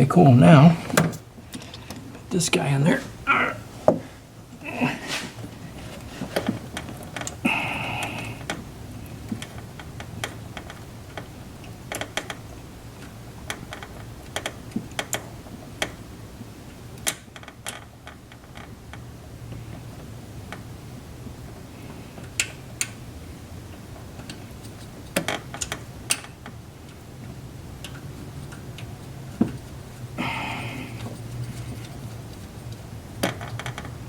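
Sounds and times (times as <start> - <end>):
rustle: 4.6 - 8.4.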